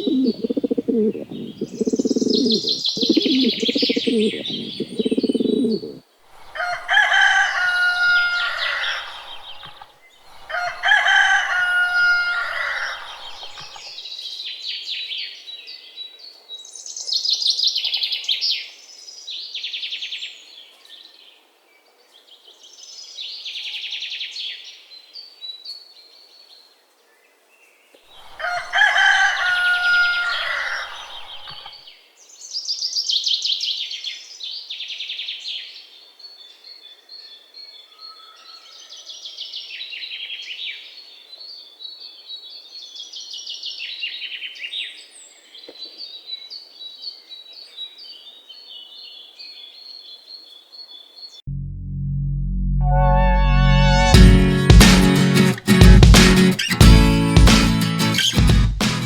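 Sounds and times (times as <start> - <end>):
parakeets chattering: 0.0 - 6.0
rooster crowing: 5.8 - 13.9, 28.2 - 31.8.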